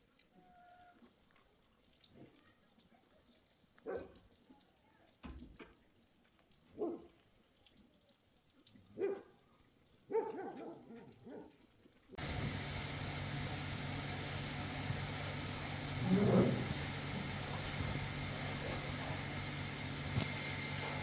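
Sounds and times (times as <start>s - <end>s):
steady noise with low hum: 12.2s - 21.0s.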